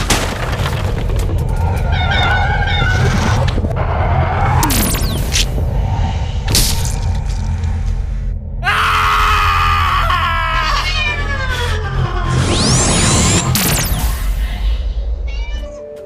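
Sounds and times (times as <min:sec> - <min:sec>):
steady low drone: 0:00.8 - 0:15.4
cat yowling: 0:09.7 - 0:12.6.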